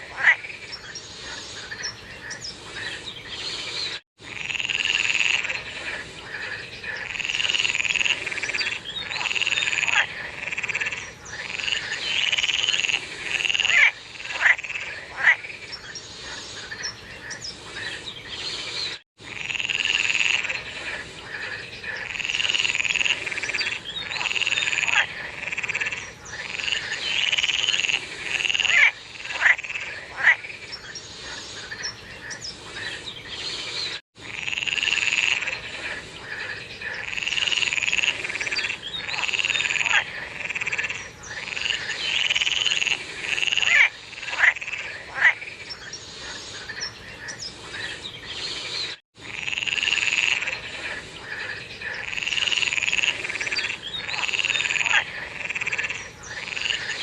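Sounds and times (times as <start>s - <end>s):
frogs croaking: 0.0s - 3.6s, 4.2s - 18.6s, 19.2s - 33.6s, 34.2s - 48.6s, 49.2s - 57.0s
loud single frog calls: 36.4s - 45.4s, 51.3s - 57.0s.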